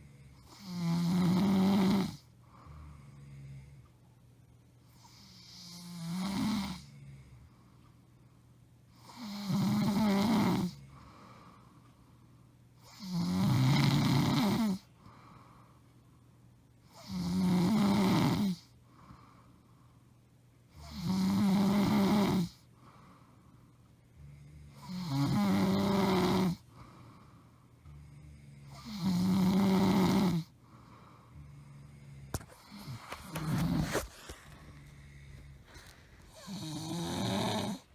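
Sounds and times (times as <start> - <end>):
woman snoring: 0.4 - 2.3, 5.0 - 7.1, 9.0 - 10.9, 12.8 - 14.9, 16.9 - 18.7, 20.8 - 22.6, 24.2 - 26.7, 27.9 - 30.6, 31.4 - 37.9.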